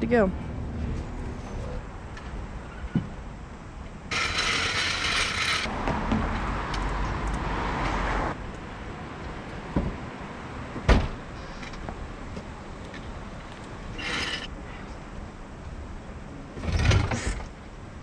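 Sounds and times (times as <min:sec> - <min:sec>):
car jack rasping: 0:04.1 - 0:05.7, 0:14.0 - 0:14.5.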